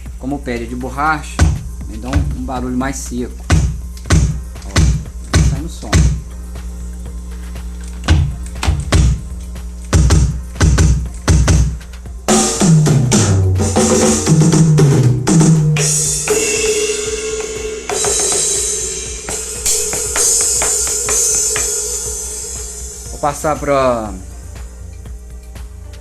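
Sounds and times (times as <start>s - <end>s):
bass drum kicks: 0.0s - 25.8s
tom fill: 1.4s - 7.2s
cymbal crashes ringing: 12.3s - 24.8s.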